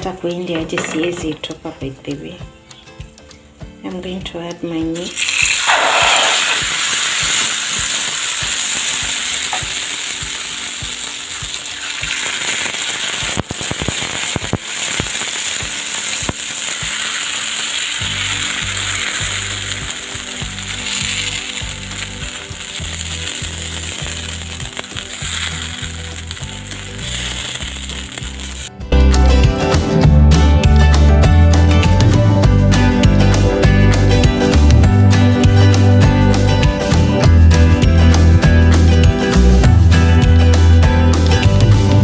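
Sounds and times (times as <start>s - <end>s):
batter sizzling in oil: 5.0s - 28.7s
oil spattering pops: 11.5s - 20.1s.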